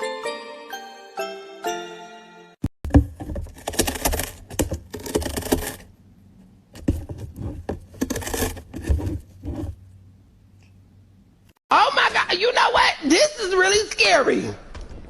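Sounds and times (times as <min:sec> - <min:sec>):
scratching and rustling: 0:06.7 - 0:09.8.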